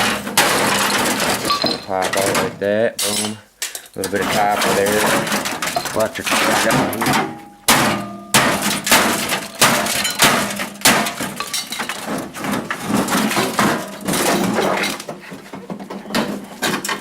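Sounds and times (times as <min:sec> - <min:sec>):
loose metal parts rattling: 0:00.0 - 0:17.0
hammer striking sheet metal: 0:06.3 - 0:11.5.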